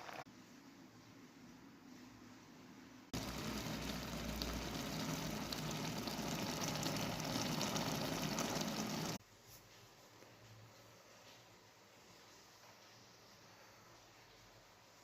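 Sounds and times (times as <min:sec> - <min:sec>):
food crackling and bubbling in pot: 0:03.2 - 0:09.2.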